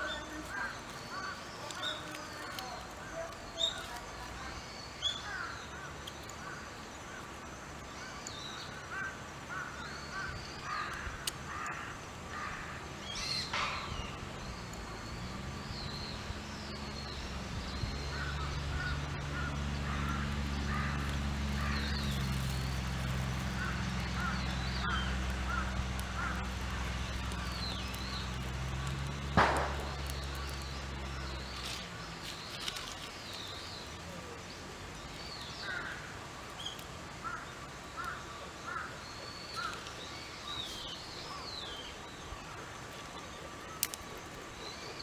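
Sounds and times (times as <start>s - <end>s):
crows cawing: 0.0s - 3.7s, 5.2s - 7.4s, 8.0s - 14.2s, 18.1s - 31.8s, 35.4s - 36.4s, 37.1s - 40.6s
small birds chirping: 0.0s - 45.0s
low motor hum: 9.6s - 40.9s.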